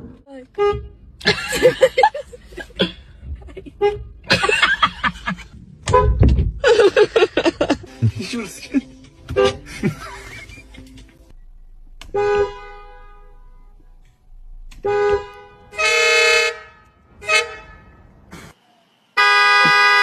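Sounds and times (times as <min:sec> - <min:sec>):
car horn honking: 0:00.5 - 0:01.4, 0:03.7 - 0:06.3, 0:09.1 - 0:09.8, 0:12.0 - 0:14.1, 0:14.7 - 0:18.2, 0:19.2 - 0:20.0.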